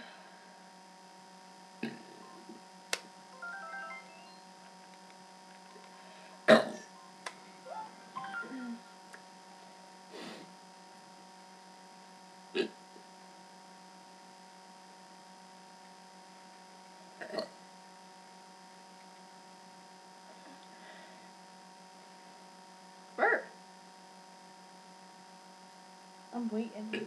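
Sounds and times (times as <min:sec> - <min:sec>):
electrical hum: 0:00.0 - 0:27.0.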